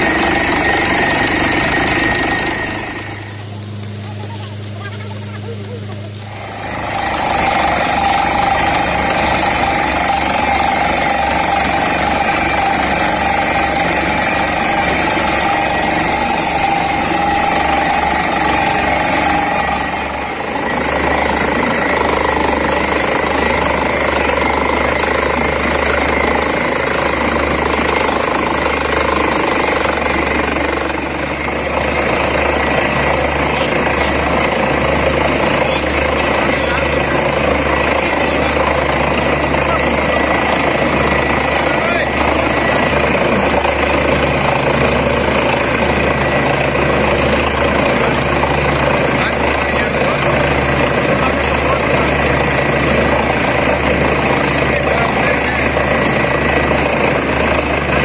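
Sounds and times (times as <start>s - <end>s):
air hammer pounding rapidly: 0.0s - 29.5s
drilling rig engine and compressor: 0.0s - 58.0s.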